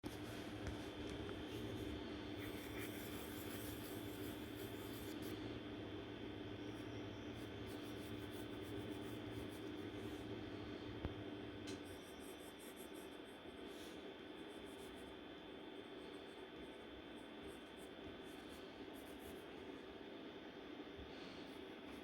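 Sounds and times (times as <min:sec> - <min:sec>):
steady low hum: 0:00.0 - 0:22.0
scratching of drawing strokes: 0:00.1 - 0:05.4, 0:06.7 - 0:10.3, 0:11.7 - 0:13.7, 0:14.4 - 0:15.2, 0:15.8 - 0:19.6.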